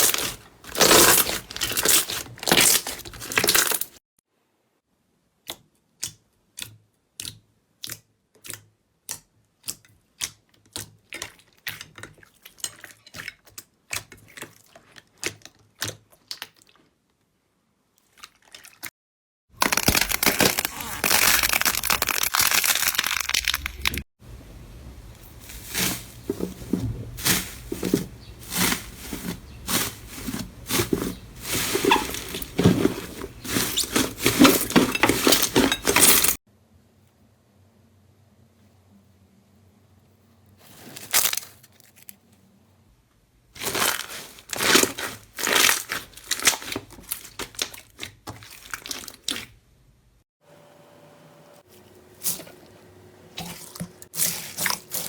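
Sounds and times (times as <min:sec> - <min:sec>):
slime crackling and crunching: 0:00.0 - 0:04.0, 0:19.6 - 0:24.0, 0:43.6 - 0:49.5, 0:53.4 - 0:55.0
sharp clicks of slime: 0:05.4 - 0:10.9.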